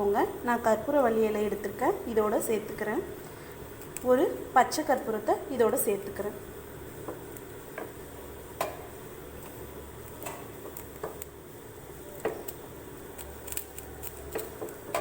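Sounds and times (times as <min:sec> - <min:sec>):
leaves crackling and popping: 0:03.8 - 0:04.1, 0:08.6 - 0:15.0.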